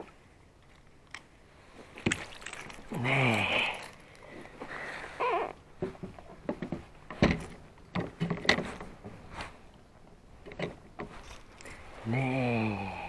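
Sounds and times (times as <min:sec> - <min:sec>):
irregular knocks and clunks: 0:05.8 - 0:09.2, 0:10.4 - 0:11.4.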